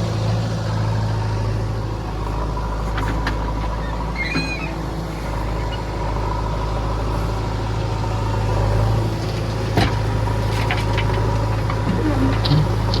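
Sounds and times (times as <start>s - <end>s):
heavy diesel engine droning: 0.0s - 13.0s
brief high squeak: 4.2s - 4.8s.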